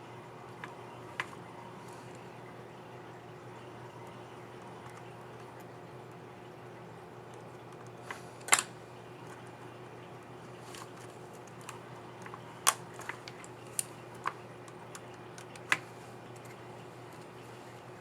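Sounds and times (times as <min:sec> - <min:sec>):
faint steady hum: 0:00.0 - 0:18.0
small plastic clicks: 0:10.7 - 0:17.3.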